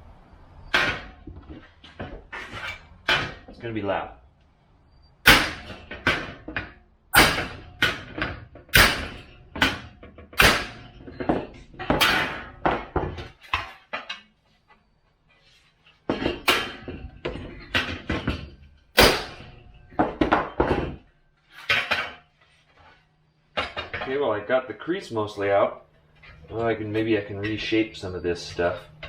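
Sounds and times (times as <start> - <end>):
hammer striking sheet metal: 5.2 - 6.4, 7.1 - 10.9, 19.0 - 19.6.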